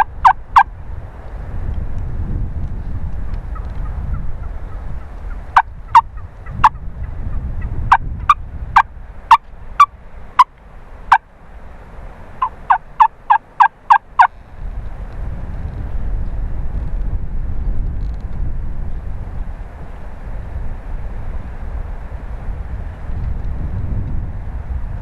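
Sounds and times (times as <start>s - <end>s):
turkey yelps: 0.0s - 0.7s, 12.4s - 14.3s.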